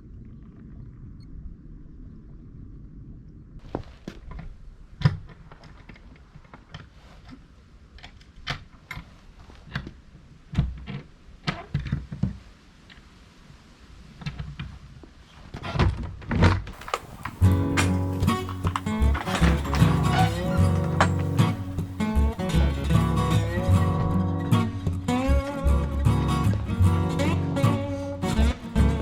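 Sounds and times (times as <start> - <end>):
faint low rumble: 0.0 - 5.0.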